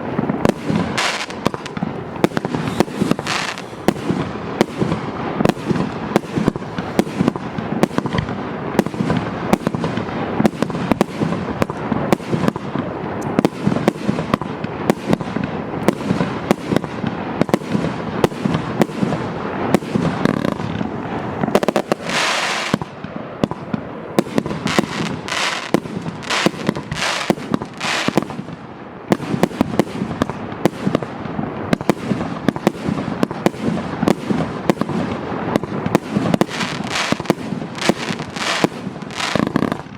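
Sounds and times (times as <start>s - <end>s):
fireworks launching and bursting: 0.0s - 39.9s
firework hissing burst: 0.6s - 7.4s, 19.4s - 22.8s, 24.4s - 28.2s.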